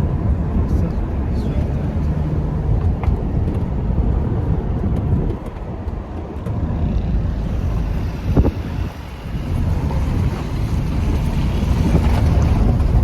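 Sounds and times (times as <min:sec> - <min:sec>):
car road and engine rumble: 0:00.0 - 0:13.0.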